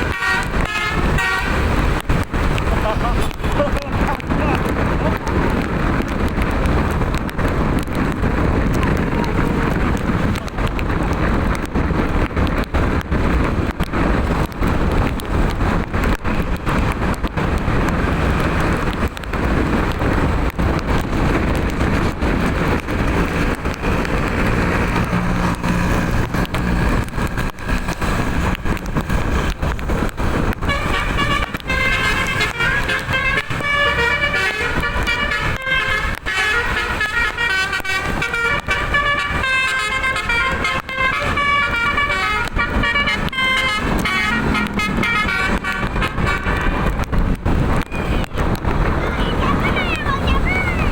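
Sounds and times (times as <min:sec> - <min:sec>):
multi-tone bus horn tune: 0:00.0 - 0:02.0, 0:30.6 - 0:47.0
rushing noise with crackles: 0:00.0 - 0:50.9.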